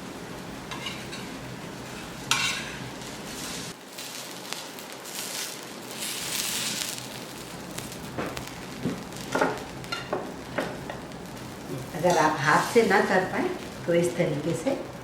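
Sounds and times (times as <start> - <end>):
food sizzling on a griddle: 0.0 - 15.0
metal spatula scraping pan: 0.7 - 1.3, 1.9 - 2.8.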